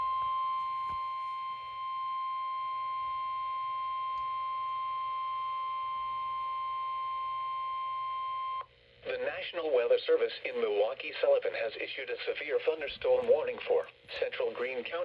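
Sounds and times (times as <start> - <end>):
steady high alarm tone: 0.0 - 8.7.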